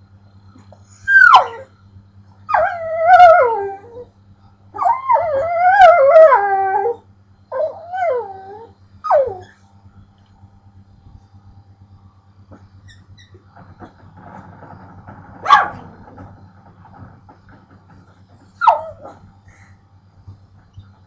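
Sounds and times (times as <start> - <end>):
dog howling and whining: 1.0 - 1.7, 2.5 - 4.1, 4.7 - 9.6, 15.4 - 16.1, 18.5 - 19.3.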